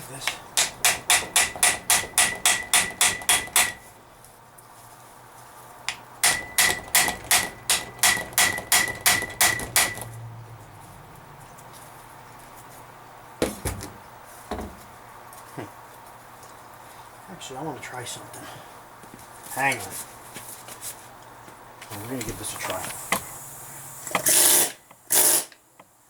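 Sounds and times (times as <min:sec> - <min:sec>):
hammer blows on steel: 0:00.5 - 0:03.9.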